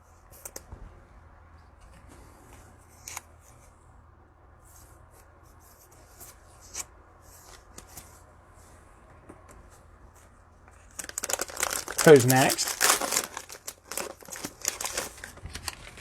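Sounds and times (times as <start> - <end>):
trading cards rustling and clicking: 10.9 - 16.0.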